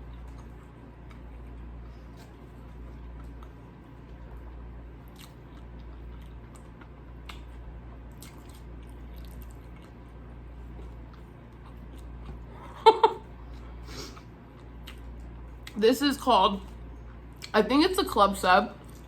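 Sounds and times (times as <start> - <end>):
person chewing: 0.0 - 12.8, 13.4 - 15.8, 16.6 - 17.6, 18.8 - 19.0.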